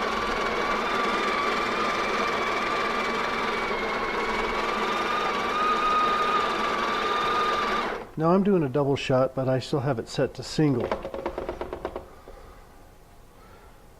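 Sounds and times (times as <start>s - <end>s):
coffee grinder motor whirring: 0.0s - 8.1s.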